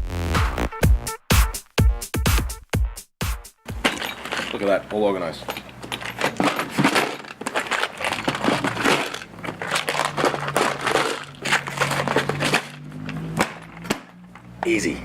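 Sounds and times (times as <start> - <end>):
metal nuts and bolts clattering: 3.7 - 14.6.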